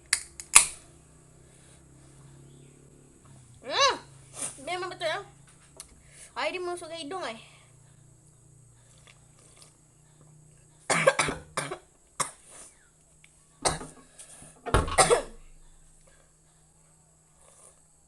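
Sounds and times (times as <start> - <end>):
person coughing hard: 10.9 - 12.4, 13.6 - 14.0, 14.9 - 15.4.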